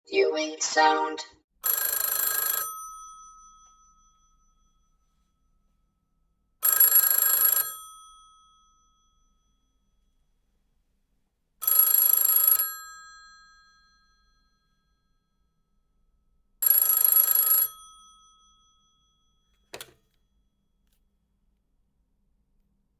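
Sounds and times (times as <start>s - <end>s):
old telephone bell ringing: 1.6s - 3.8s, 6.6s - 8.2s, 11.6s - 14.1s, 16.6s - 18.4s.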